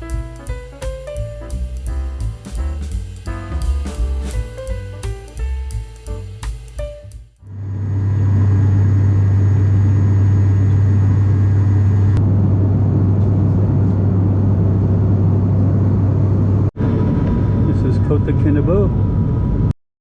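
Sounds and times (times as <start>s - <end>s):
turboprop cabin drone: 7.5s - 19.7s.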